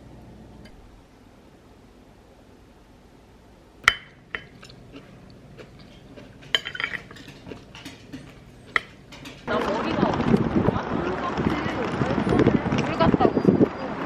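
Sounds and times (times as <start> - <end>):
dishes and cutlery clinking: 3.8 - 9.8.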